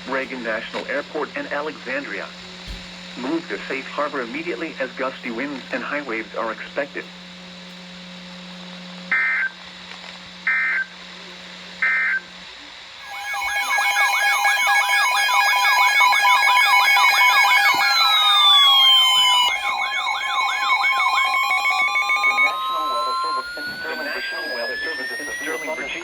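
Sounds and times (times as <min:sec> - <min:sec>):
low hum and hiss: 0:00.0 - 0:14.4
buzzing data bursts: 0:13.0 - 0:26.0
electronic siren-like alert tones: 0:13.0 - 0:26.0.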